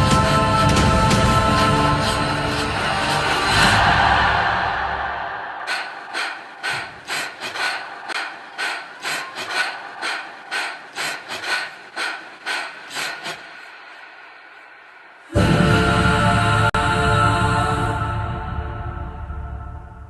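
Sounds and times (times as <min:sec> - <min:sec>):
person gasping quickly: 0:02.1 - 0:15.4.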